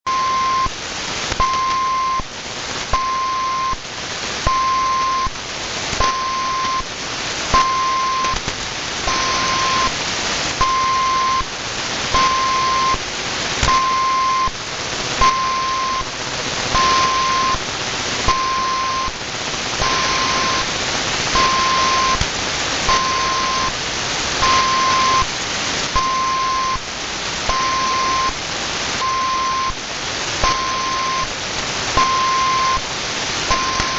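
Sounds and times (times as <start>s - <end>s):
radio beep signal: 0.1s - 0.7s, 1.4s - 2.3s, 2.9s - 3.8s, 4.4s - 5.3s, 6.0s - 6.9s, 7.5s - 8.4s, 9.1s - 10.0s, 10.6s - 11.5s, 12.1s - 13.0s, 13.7s - 14.6s, 15.2s - 16.1s, 16.7s - 17.6s, 18.2s - 19.2s, 19.8s - 20.7s, 21.3s - 22.2s, 22.8s - 23.8s, 24.4s - 25.3s, 25.9s - 26.8s, 27.5s - 28.4s, 29.0s - 29.8s, 30.4s - 31.3s, 32.0s - 32.8s, 33.5s - 33.9s
radio static hiss: 0.1s - 33.9s.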